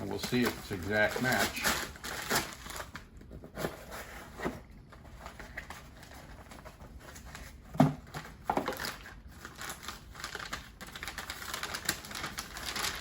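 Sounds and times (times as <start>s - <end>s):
packaging rustling: 0.0s - 13.0s.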